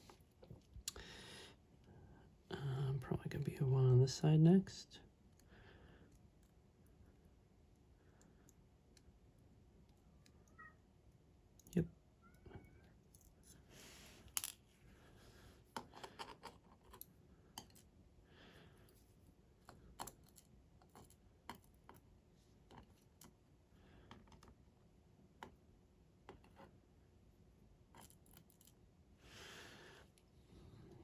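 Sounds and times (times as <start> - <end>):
small metallic clicks and taps: 15.8 - 17.8.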